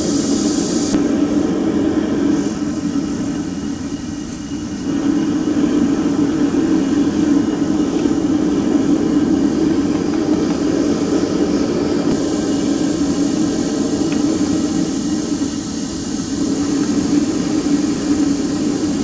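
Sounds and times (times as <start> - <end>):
furnace rushing noise: 4.6 - 19.0.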